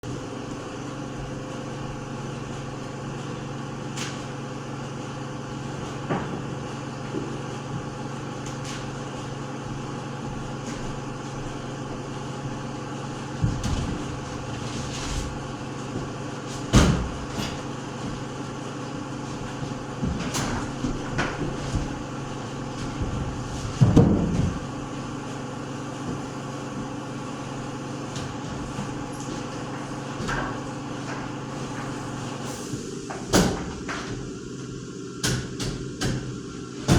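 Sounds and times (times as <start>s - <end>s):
machine humming: 0.0s - 35.6s
sharp knocks and clanks: 13.2s - 24.9s, 33.0s - 34.4s, 35.2s - 36.9s.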